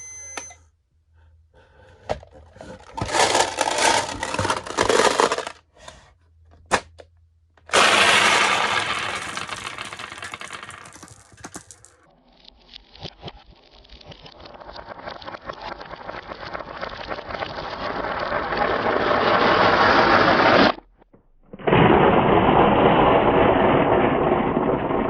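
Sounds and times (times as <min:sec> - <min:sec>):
marbles rolling and clattering: 0:02.8 - 0:05.6, 0:07.7 - 0:12.1, 0:13.0 - 0:20.7, 0:21.5 - 0:25.0.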